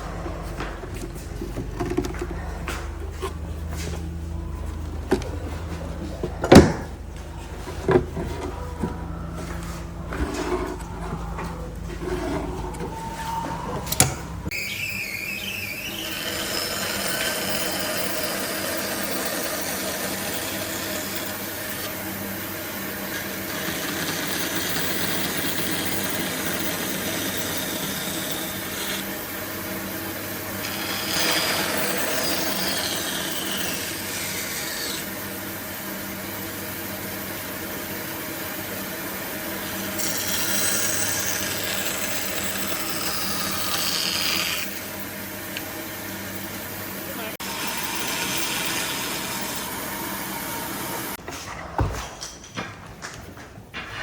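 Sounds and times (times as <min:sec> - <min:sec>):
power tool motor hum: 0:13.8 - 0:51.2.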